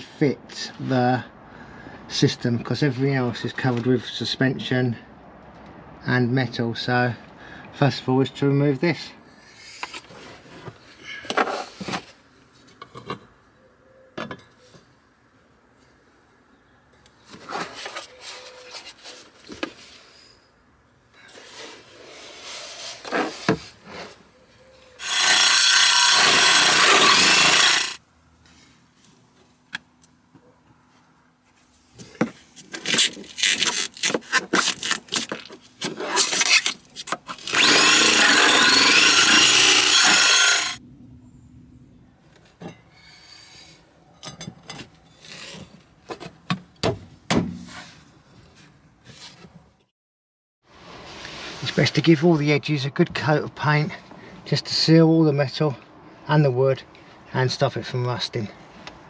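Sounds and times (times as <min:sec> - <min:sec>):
hole saw drilling through floor: 0:25.0 - 0:28.0, 0:37.4 - 0:40.8.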